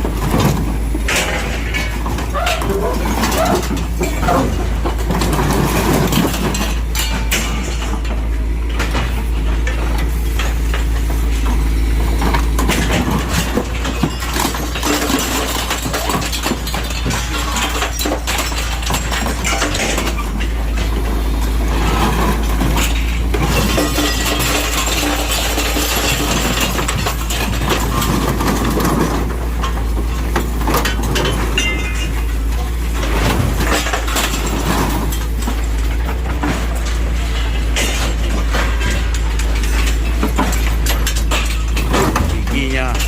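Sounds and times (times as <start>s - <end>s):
excavator engine running: 0.0s - 43.0s
metal crunching and creaking: 0.0s - 43.0s
glass breaking: 12.7s - 20.2s, 22.8s - 29.1s, 30.7s - 32.3s, 36.5s - 43.0s.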